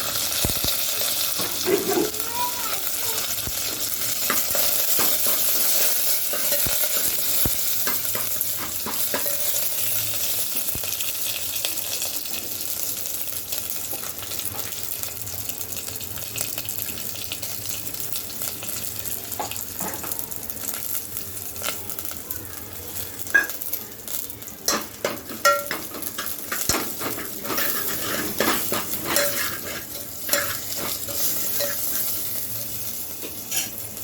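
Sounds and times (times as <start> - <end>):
food sizzling in hot oil: 0.0 - 34.0
spoon knocking against pan: 24.7 - 29.6.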